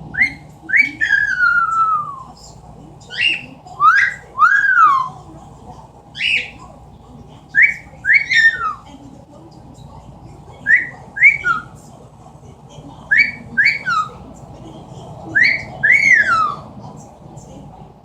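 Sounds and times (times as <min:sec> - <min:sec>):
parrot wolf whistle: 0:00.1 - 0:02.3, 0:03.1 - 0:05.1, 0:06.2 - 0:06.6, 0:07.6 - 0:08.8, 0:10.7 - 0:11.8, 0:13.1 - 0:14.1, 0:15.4 - 0:16.7.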